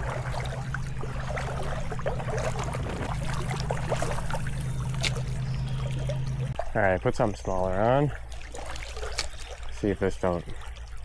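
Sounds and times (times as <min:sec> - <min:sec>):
low rumble: 0:00.0 - 0:06.6
stream water trickling: 0:00.0 - 0:11.0.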